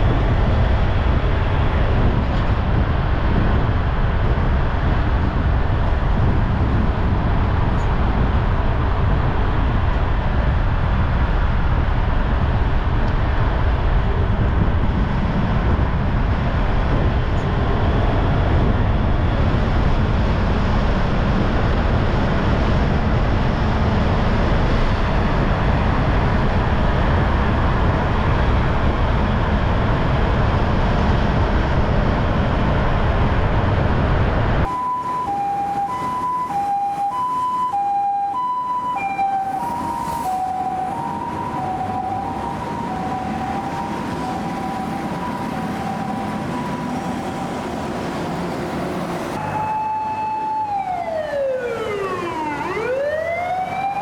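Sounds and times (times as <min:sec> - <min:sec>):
vehicles driving road noise: 0:00.0 - 0:54.0
two-tone emergency siren: 0:34.6 - 0:54.0.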